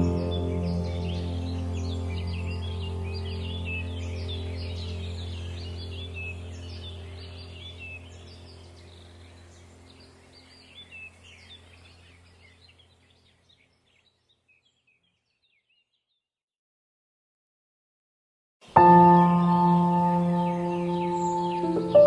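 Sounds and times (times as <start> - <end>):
low steady hum: 0.0 - 13.2
birds chirping and trilling: 0.0 - 16.2, 18.6 - 22.0.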